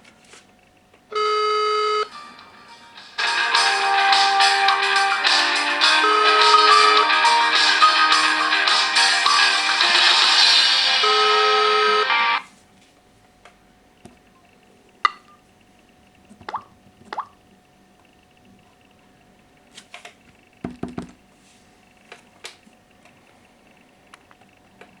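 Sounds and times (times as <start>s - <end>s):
faint steady hum: 0.0s - 25.0s.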